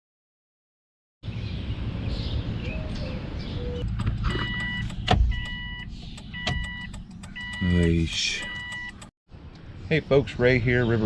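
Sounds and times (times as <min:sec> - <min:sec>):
car warning chime beeping: 0:03.8 - 0:09.1.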